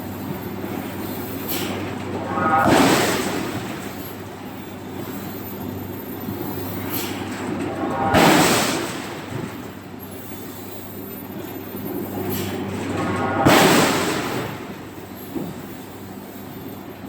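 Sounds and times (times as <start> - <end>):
low machine hum: 0.0 - 17.0
heavy forging blow: 1.5 - 4.2, 7.1 - 9.6, 12.8 - 15.6.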